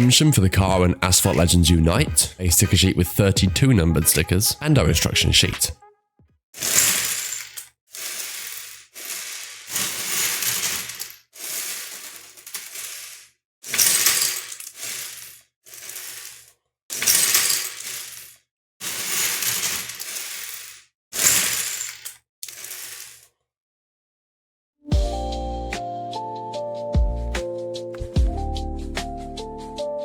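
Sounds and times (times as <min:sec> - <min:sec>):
plastic pieces clattering: 0:06.6 - 0:23.3.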